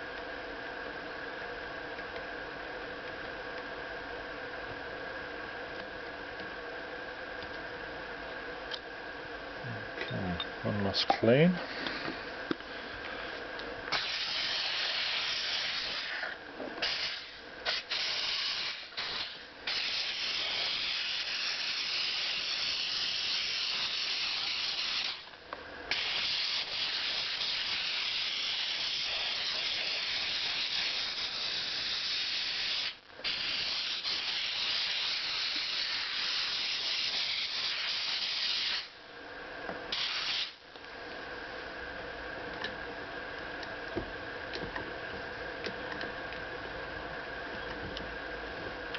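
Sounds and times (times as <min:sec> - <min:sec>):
hissing spray: 0:13.9 - 0:25.3, 0:25.9 - 0:39.0, 0:39.9 - 0:40.6.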